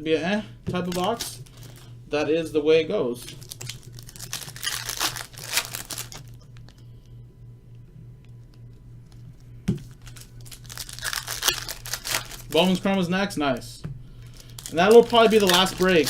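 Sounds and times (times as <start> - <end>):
low hum: 0.0 - 16.0
plastic wrappers crinkling: 0.8 - 1.9, 3.2 - 6.8, 9.8 - 13.1, 14.2 - 16.0.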